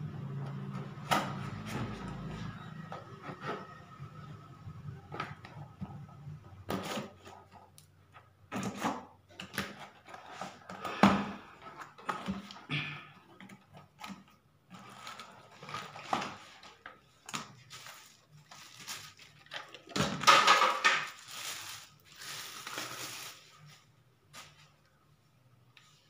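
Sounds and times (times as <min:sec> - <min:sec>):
packaging rustling: 0:14.8 - 0:24.7.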